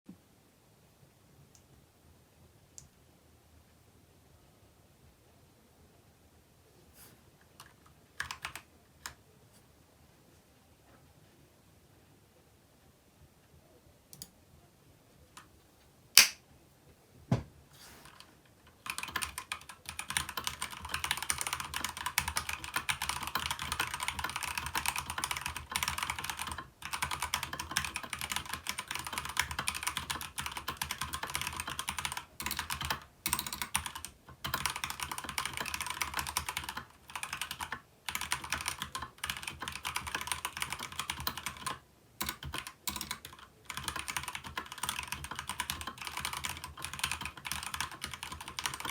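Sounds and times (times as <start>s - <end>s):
fast typing on mechanical keyboard: 7.6s - 8.6s, 18.0s - 48.9s
sharp single clicks: 16.2s - 16.4s.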